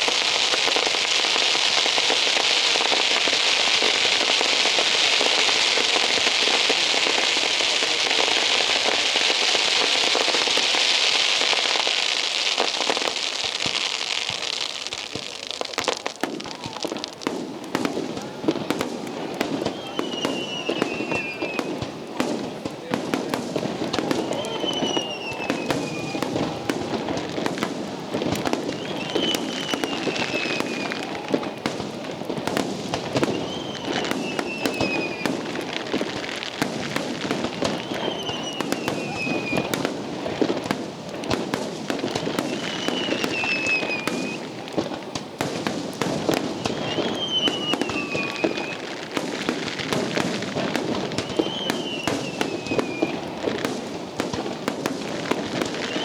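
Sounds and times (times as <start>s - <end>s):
fireworks bangs and crackling: 0.0s - 56.0s
high falling whistle: 33.3s - 35.3s, 37.8s - 39.7s, 46.7s - 48.8s.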